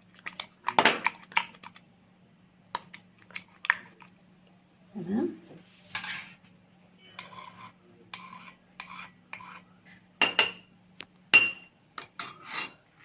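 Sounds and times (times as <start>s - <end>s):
spoon scraping metal strainer: 7.0s - 9.6s, 12.2s - 12.8s.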